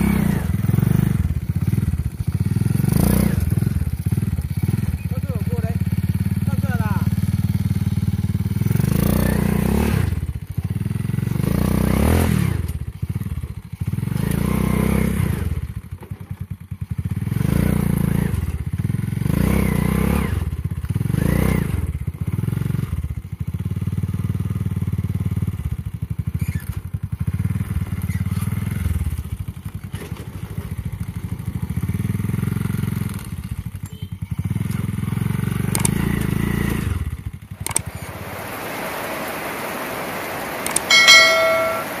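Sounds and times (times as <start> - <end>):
motorcycle engine revving: 0.0 - 29.6, 31.0 - 38.9.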